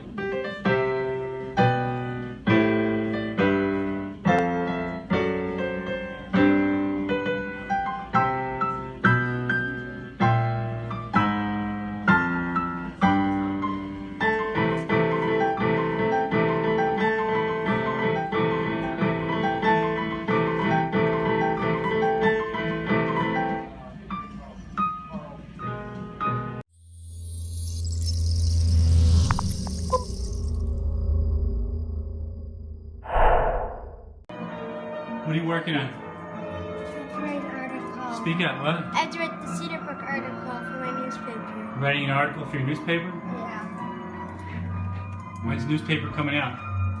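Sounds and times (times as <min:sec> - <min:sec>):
piano music: 0:00.0 - 0:23.7.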